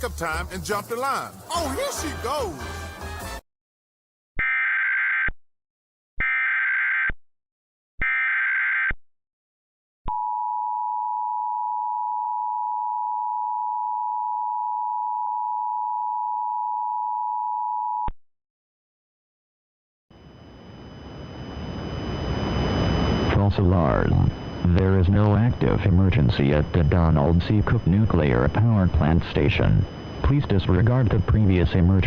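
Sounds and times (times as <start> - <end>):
digital data tone bursts: 20.2 - 32.0.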